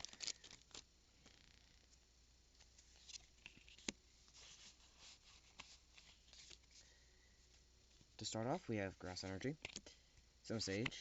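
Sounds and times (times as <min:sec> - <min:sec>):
trading cards rustling: 0:00.0 - 0:01.8.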